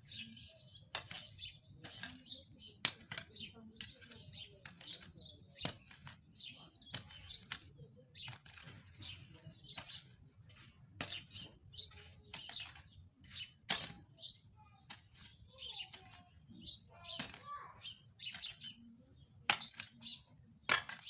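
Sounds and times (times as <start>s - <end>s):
small birds chirping: 0.0s - 21.0s
tool scraping and chopping soil: 0.0s - 21.0s.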